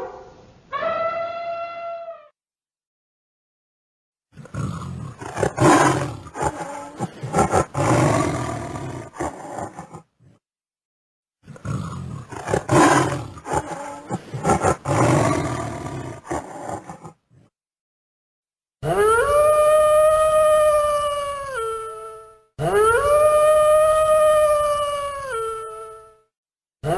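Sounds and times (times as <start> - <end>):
animal roaring: 4.3 - 10.4, 11.4 - 17.5.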